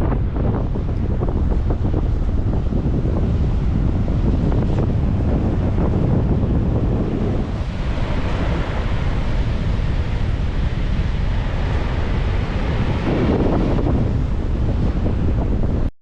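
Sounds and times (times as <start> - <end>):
ocean surf: 0.0 - 15.9
wind buffeting microphone: 0.0 - 15.9.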